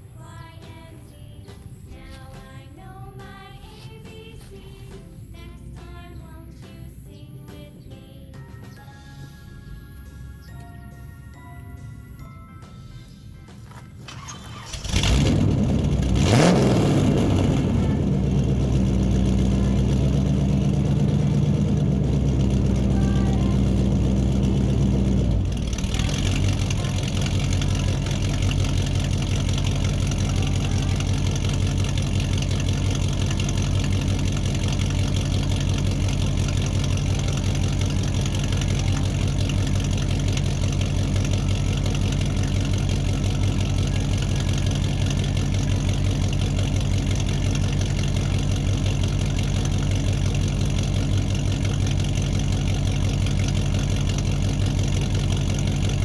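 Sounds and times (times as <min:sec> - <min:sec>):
engine idling: 0:13.0 - 0:56.0.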